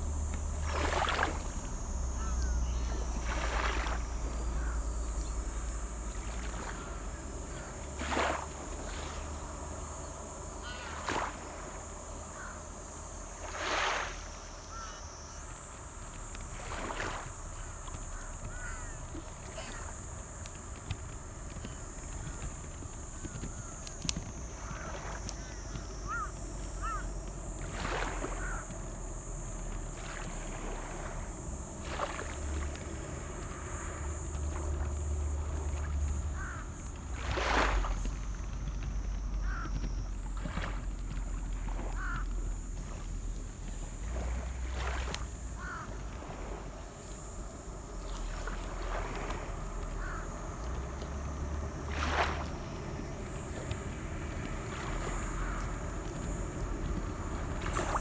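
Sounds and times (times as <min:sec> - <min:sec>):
short chirping calls: 0:00.0 - 0:08.2
steady high hiss: 0:00.0 - 0:58.0
wind rumbling on microphone: 0:00.0 - 0:58.0.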